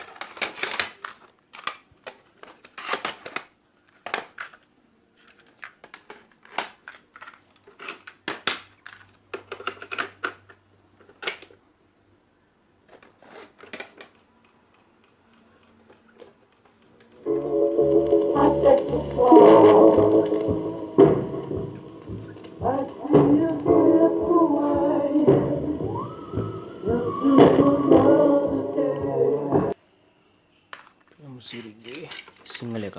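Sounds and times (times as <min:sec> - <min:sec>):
radio control clicks and crackles: 0:17.2 - 0:29.6.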